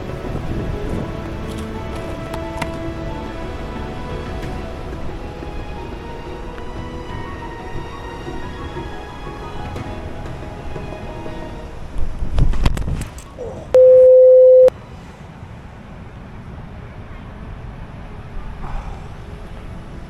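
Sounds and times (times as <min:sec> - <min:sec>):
censor bleep: 0:13.7 - 0:14.7.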